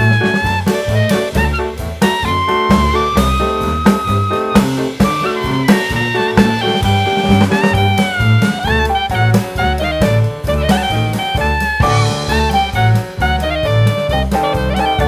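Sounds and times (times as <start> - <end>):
jazzy background music: 0.0 - 15.0.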